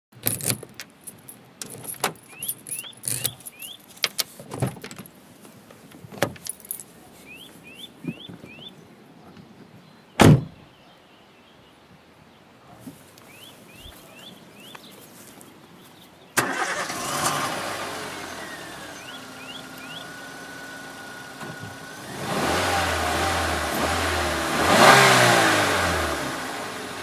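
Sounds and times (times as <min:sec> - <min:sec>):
car keys jangling: 0:00.2 - 0:05.2, 0:05.9 - 0:08.4, 0:16.4 - 0:17.1
small birds chirping: 0:01.5 - 0:04.6, 0:05.3 - 0:16.4, 0:18.0 - 0:21.2
car door shutting: 0:10.2 - 0:10.6.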